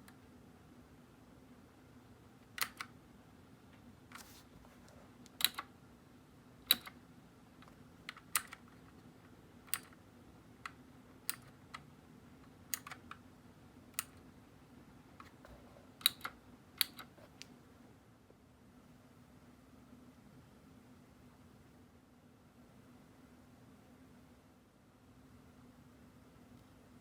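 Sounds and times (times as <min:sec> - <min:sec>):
mechanical keyboard key clicks: 0:02.6 - 0:02.9, 0:05.3 - 0:05.7, 0:06.7 - 0:07.0, 0:08.0 - 0:08.9, 0:09.7 - 0:10.0, 0:10.6 - 0:11.9, 0:12.7 - 0:13.2, 0:16.0 - 0:17.1.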